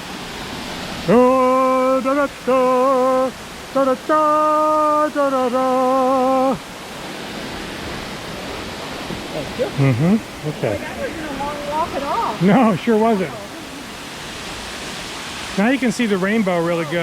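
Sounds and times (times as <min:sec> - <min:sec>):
waterfall rushing: 0:00.0 - 0:17.0
person singing long notes: 0:01.0 - 0:06.7.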